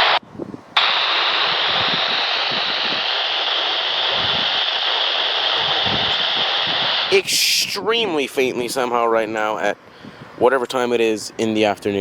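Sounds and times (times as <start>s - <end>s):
radio static hiss: 0.0s - 0.2s, 0.8s - 9.8s.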